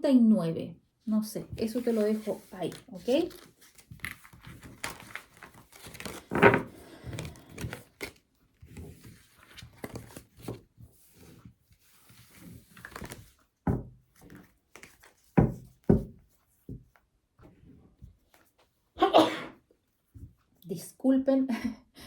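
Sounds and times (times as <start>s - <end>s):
soft handling noises: 1.4s - 19.0s.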